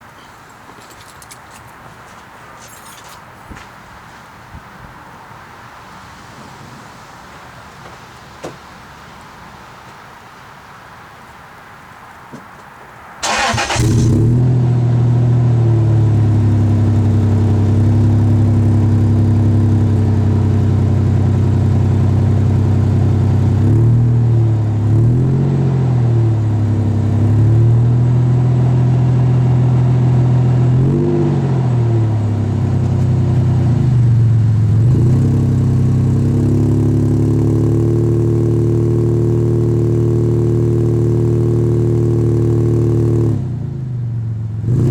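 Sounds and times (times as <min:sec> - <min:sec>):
starter cranking: 0:13.2 - 0:14.2
engine idling through exhaust: 0:13.2 - 0:23.7
engine throttle blips: 0:13.2 - 0:24.2.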